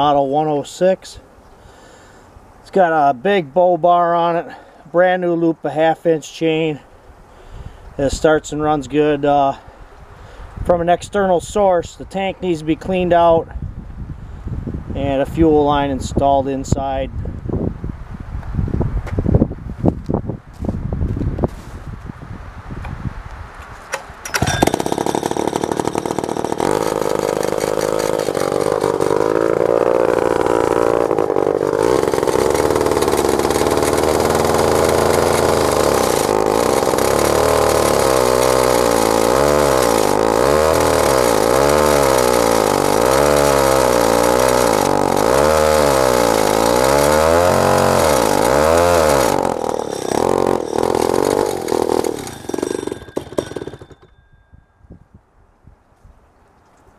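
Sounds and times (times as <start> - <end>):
chainsaw running: 23.9 - 54.4.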